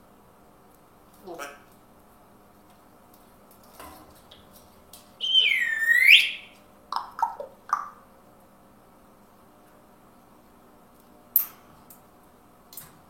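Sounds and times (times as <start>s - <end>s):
high whistle-like call: 5.2s - 6.6s
short lower chirps: 5.2s - 6.6s.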